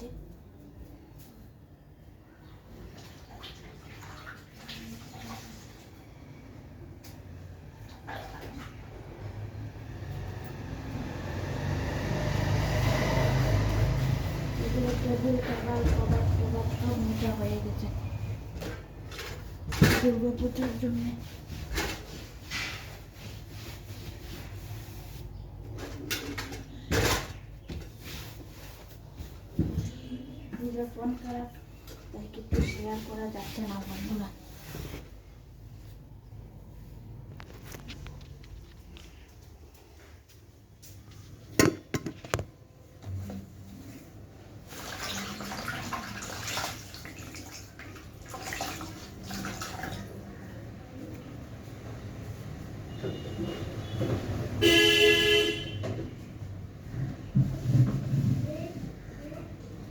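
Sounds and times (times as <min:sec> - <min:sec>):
water running and splashing: 0:02.8 - 0:06.0, 0:44.6 - 0:50.4
cloth rubbing on a table: 0:20.7 - 0:25.4, 0:27.9 - 0:29.6, 0:32.6 - 0:36.0.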